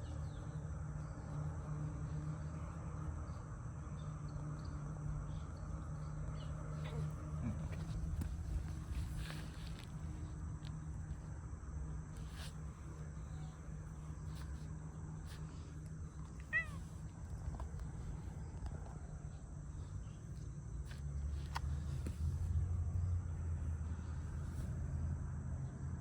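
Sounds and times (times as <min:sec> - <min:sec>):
low background rumble: 0:00.0 - 0:26.0
cat meowing: 0:16.3 - 0:16.9.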